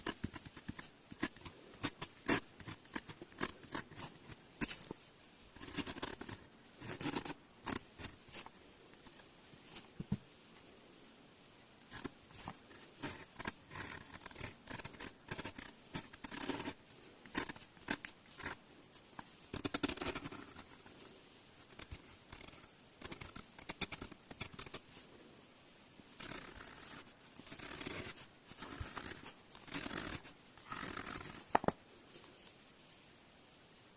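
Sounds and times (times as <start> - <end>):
pen nib scratching on paper: 0.0 - 5.0, 5.6 - 9.2, 11.9 - 18.6, 19.5 - 20.9, 21.7 - 24.8, 26.2 - 31.7.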